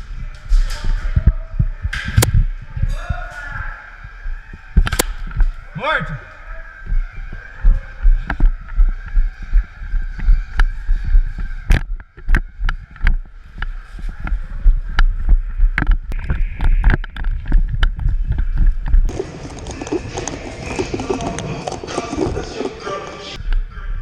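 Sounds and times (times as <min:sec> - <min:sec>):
footsteps walking: 0:06.3 - 0:23.4.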